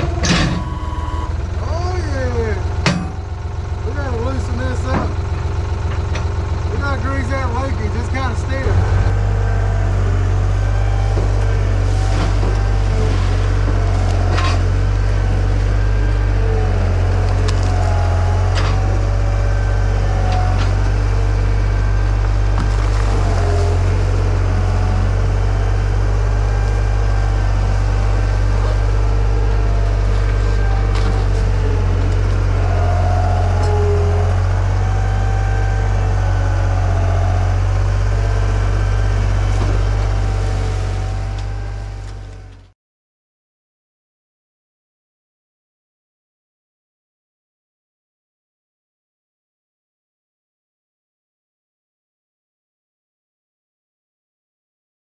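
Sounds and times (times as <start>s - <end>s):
hydraulic whine: 0.0s - 42.7s
engine running under load: 0.0s - 42.8s.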